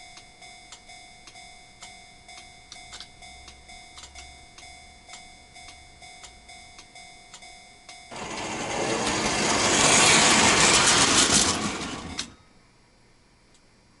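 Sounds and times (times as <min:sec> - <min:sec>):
level-crossing bell ringing: 0:00.0 - 0:09.5
model train wheels clattering: 0:08.1 - 0:12.3.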